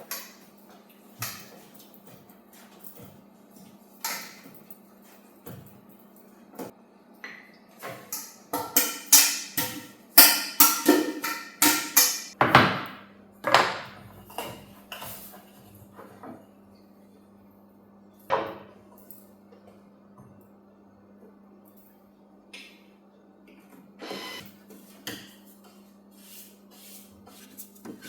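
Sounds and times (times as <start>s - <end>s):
dishes and utensils clinking: 7.8s - 12.4s.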